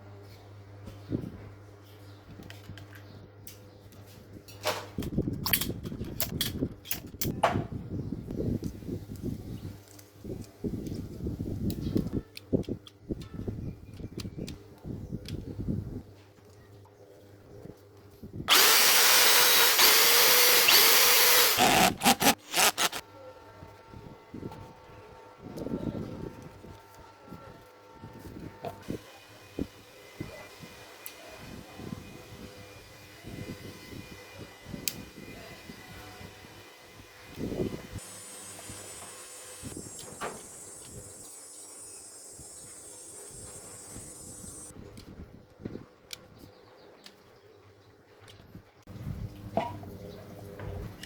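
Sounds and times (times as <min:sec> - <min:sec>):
power tool motor whine: 0:18.5 - 0:23.0, 0:28.8 - 0:44.7.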